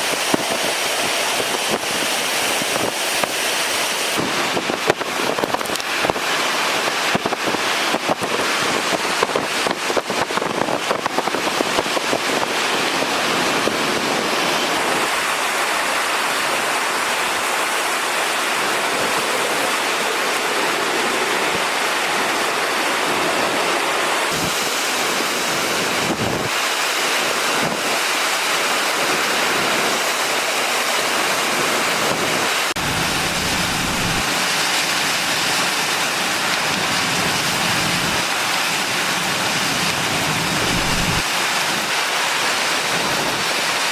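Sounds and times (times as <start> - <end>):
hurricane wind and rain: 0.0 - 43.9
wind buffeting microphone: 4.1 - 15.4, 24.3 - 26.6, 32.1 - 34.4, 39.8 - 41.8.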